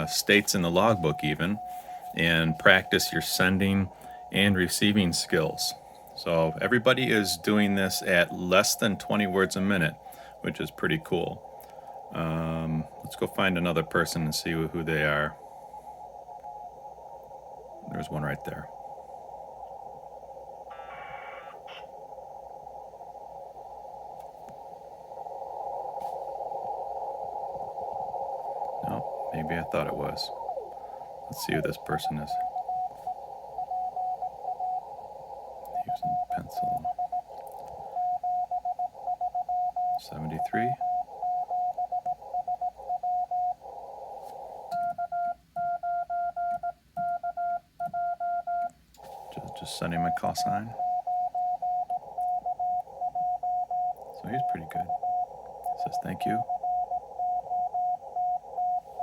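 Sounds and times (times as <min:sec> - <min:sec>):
morse code tones: 0:00.0 - 0:15.9, 0:35.6 - 0:59.0
radio band noise hiss: 0:00.0 - 0:44.9, 0:49.0 - 0:59.0.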